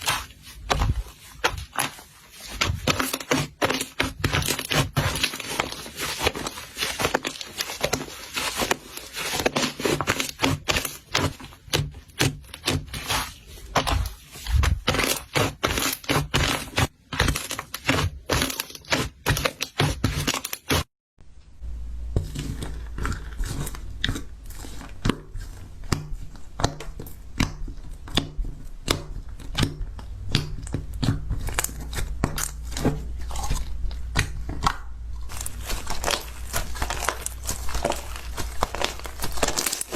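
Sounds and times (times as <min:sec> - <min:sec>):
slime crackling and popping: 0:00.0 - 0:20.9, 0:22.3 - 0:39.9
low steady hum: 0:21.2 - 0:25.0.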